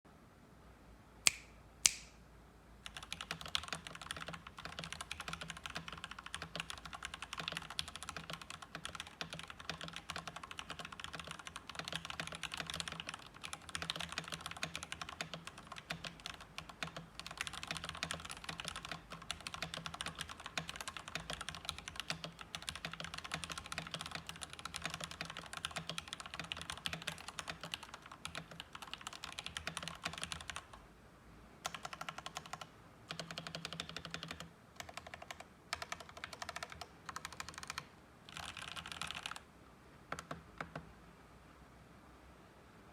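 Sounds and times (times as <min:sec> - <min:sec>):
sharp click: 0:01.3 - 0:02.2
fast mechanical keyboard typing: 0:02.8 - 0:30.8, 0:31.6 - 0:39.4, 0:40.1 - 0:40.8.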